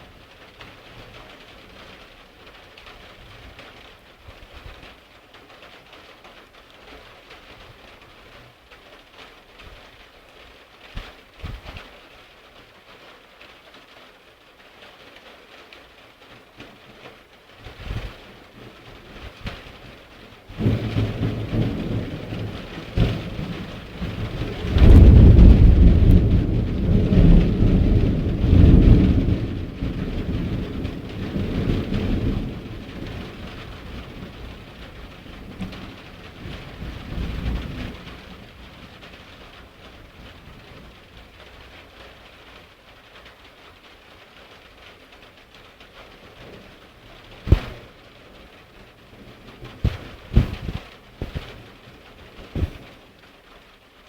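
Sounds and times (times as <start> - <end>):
steady rain: 0.0 - 54.0
thunder rumbling: 19.0 - 41.4, 46.3 - 53.0.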